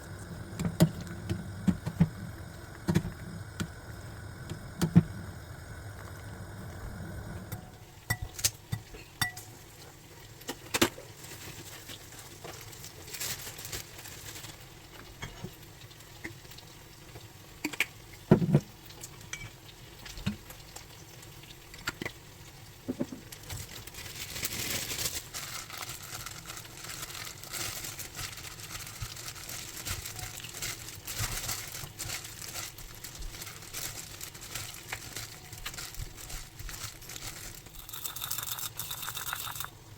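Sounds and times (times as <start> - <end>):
steady hiss: 0.0 - 8.7.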